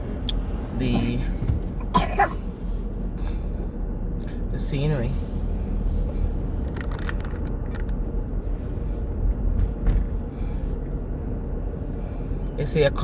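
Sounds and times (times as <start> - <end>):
engine and tyre rumble: 0.0 - 13.0
light clicks or rattles: 6.6 - 8.0.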